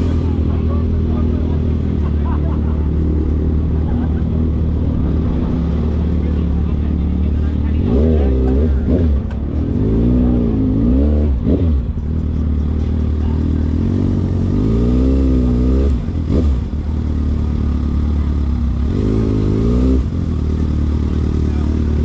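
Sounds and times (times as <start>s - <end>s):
low rumble: 0.0s - 14.5s
car engine revving: 0.0s - 22.0s.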